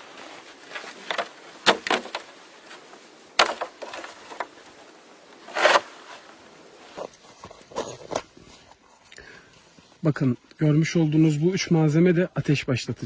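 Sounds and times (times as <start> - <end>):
wooden stick snapping: 1.0 - 2.3, 3.4 - 4.5
wooden sticks knocking together: 3.4 - 4.6.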